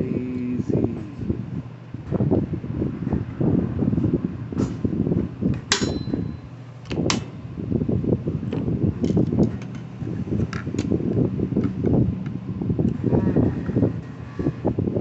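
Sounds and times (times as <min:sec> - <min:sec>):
low rumble: 0:07.0 - 0:15.0.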